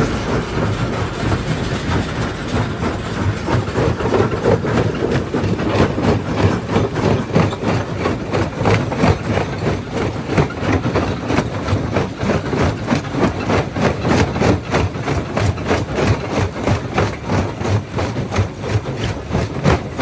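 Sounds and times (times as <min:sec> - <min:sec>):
machine drone: 0:00.0 - 0:09.6.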